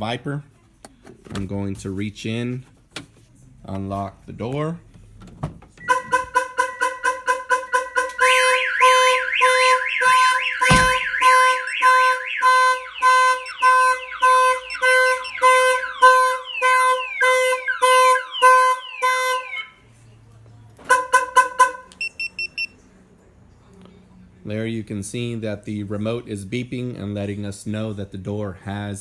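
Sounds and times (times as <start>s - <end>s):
car horn honking: 5.8s - 19.7s, 20.8s - 22.1s
car alarm siren: 5.8s - 19.9s, 20.9s - 22.7s
thump: 10.7s - 11.1s.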